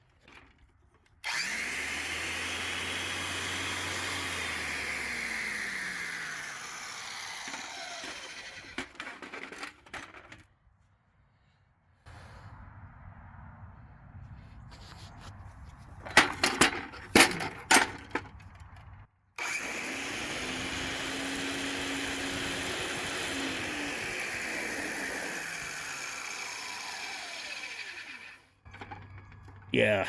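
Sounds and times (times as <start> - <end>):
miter saw motor running: 1.2 - 9.0, 19.4 - 28.9
saw being handled clunks: 16.0 - 18.4.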